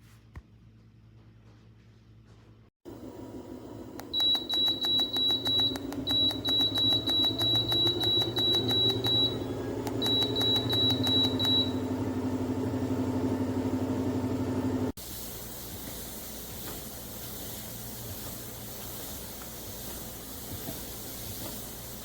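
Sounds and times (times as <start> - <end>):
treadmill motor hum: 2.3 - 14.9
short high beeps: 4.1 - 11.8.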